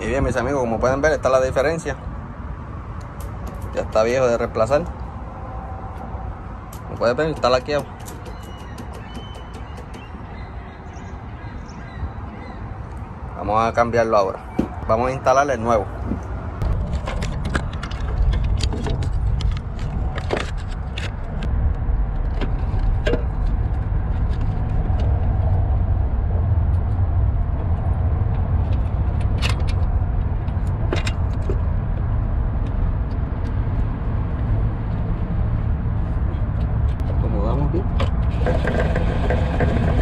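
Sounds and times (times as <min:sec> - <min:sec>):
low rumble: 0:16.2 - 0:40.0.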